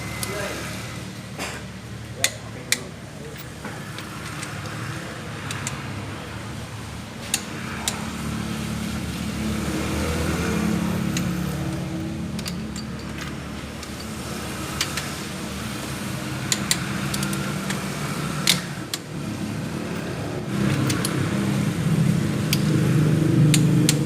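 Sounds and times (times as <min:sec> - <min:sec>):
sharp metallic clicks: 0:02.2 - 0:06.0, 0:16.4 - 0:19.1.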